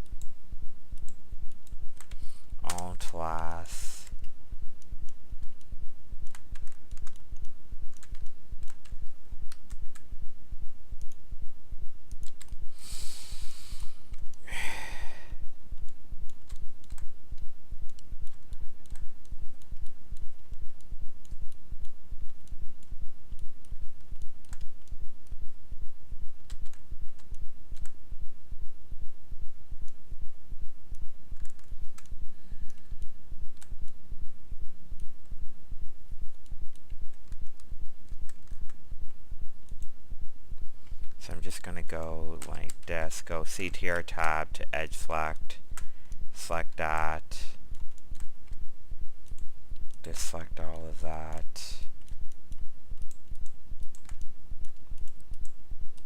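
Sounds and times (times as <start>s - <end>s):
pulsing electrical hum: 0.0s - 56.0s
keyboard keystrokes: 6.2s - 10.0s.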